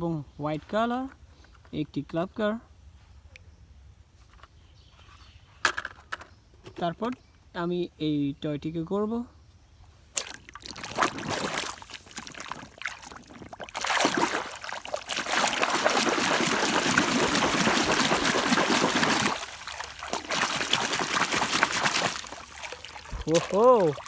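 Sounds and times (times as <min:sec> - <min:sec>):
water splashing and sloshing: 0:10.2 - 0:24.0.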